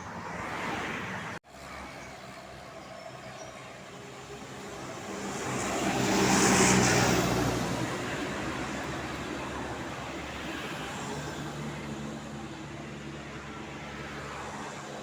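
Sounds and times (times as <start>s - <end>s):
vehicle driving past: 4.4s - 8.8s.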